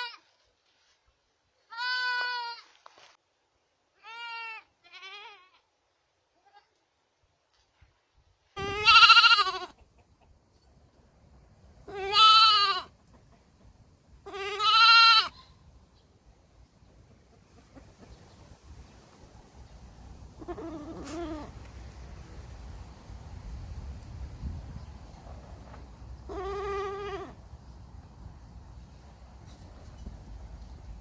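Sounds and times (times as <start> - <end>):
baby goat bleating: 0.0 - 0.3, 1.7 - 2.7, 4.0 - 5.7, 8.6 - 9.8, 11.8 - 12.9, 14.2 - 15.6, 20.4 - 21.6, 26.3 - 27.4.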